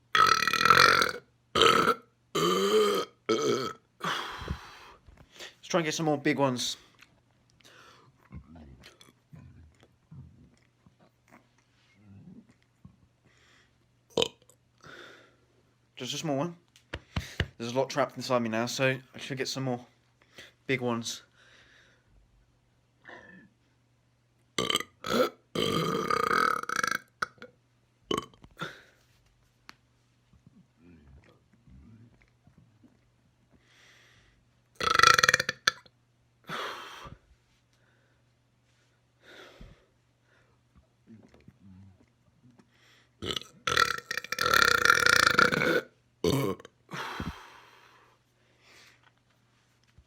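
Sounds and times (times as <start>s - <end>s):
man burping: 0.1s - 4.6s, 14.1s - 14.5s, 24.6s - 27.5s, 28.1s - 28.9s, 34.8s - 35.9s, 43.2s - 47.4s.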